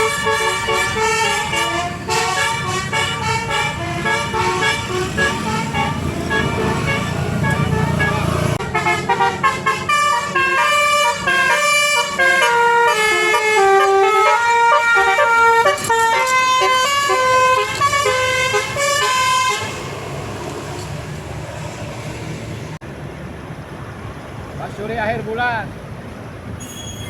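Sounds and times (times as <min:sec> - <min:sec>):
bus horn playing a melody: 0:00.0 - 0:20.1
engine and road noise hum: 0:00.0 - 0:27.0.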